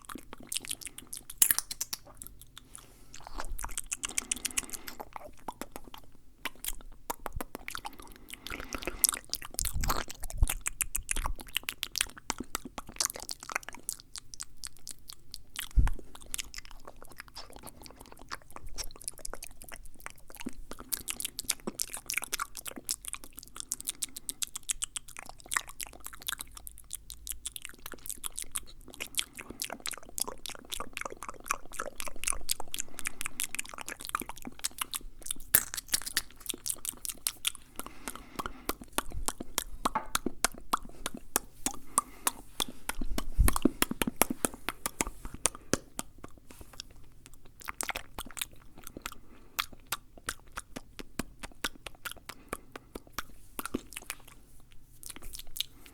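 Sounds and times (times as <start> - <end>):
mouth clicks and smacks: 0.0 - 55.9.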